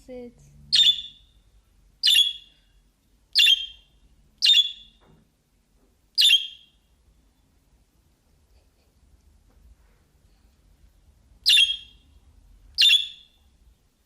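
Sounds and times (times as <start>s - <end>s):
budgerigar chirping: 0.7s - 1.4s, 2.0s - 2.6s, 3.3s - 5.0s, 6.2s - 6.8s, 11.4s - 12.1s, 12.8s - 13.4s.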